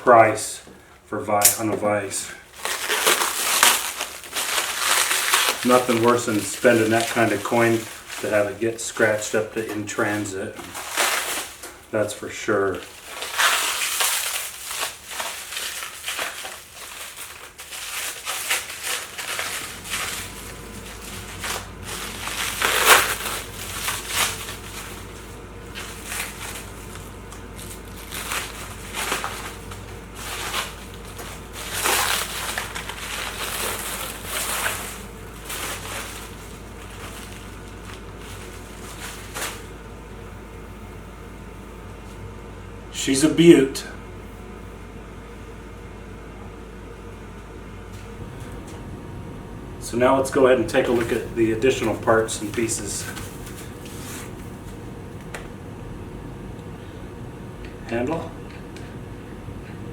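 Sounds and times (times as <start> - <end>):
packing material crumpling: 2.4 - 40.0, 50.4 - 55.5.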